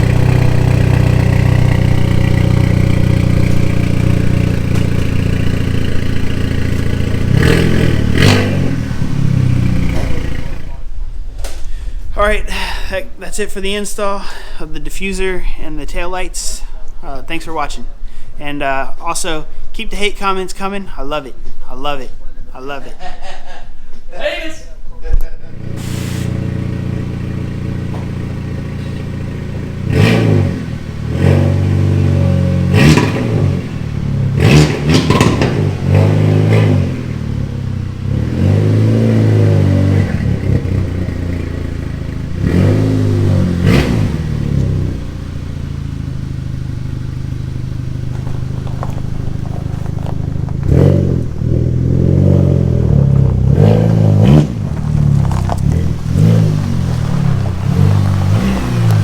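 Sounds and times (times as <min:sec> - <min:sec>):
car engine idling and revving: 0:00.0 - 0:12.1, 0:25.6 - 0:59.0.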